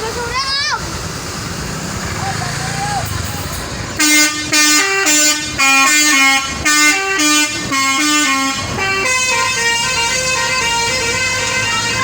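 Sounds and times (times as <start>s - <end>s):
musical air horn playing a tune: 4.0s - 12.0s
steady horn sound: 4.0s - 12.0s.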